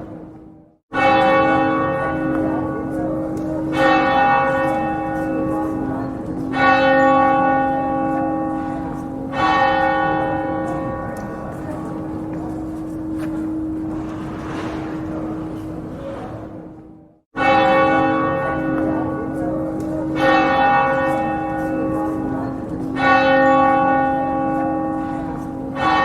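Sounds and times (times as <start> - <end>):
church bell tolling: 0.0 - 26.0.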